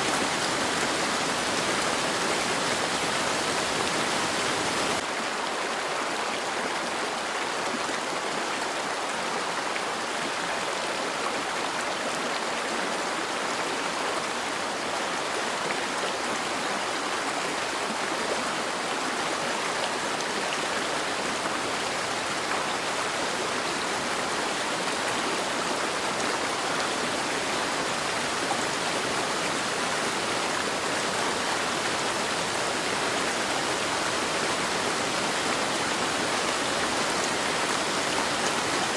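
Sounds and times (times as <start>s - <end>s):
heavy rain hissing: 0.0s - 5.0s.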